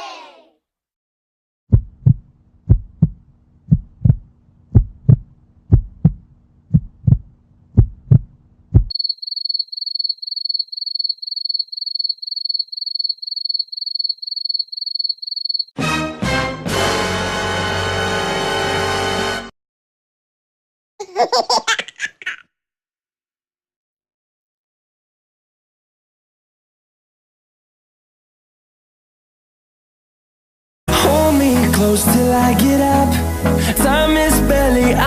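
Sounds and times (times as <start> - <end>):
heartbeat thumps: 1.7 - 8.9.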